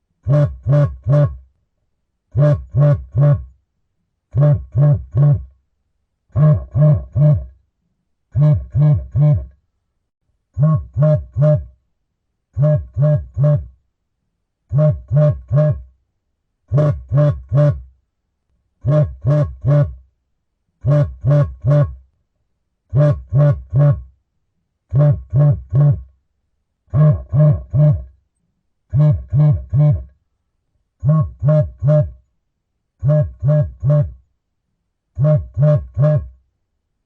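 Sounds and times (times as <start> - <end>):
mobile phone vibrating: 2.4 - 3.6, 4.3 - 5.6, 6.3 - 7.6, 8.3 - 9.5, 10.6 - 11.8, 12.6 - 13.8, 14.7 - 15.9, 16.7 - 17.9, 18.8 - 20.0, 20.8 - 22.0, 22.9 - 24.1, 24.9 - 26.2, 26.9 - 28.1, 28.9 - 30.1, 31.0 - 32.2, 33.0 - 34.2, 35.2 - 36.4.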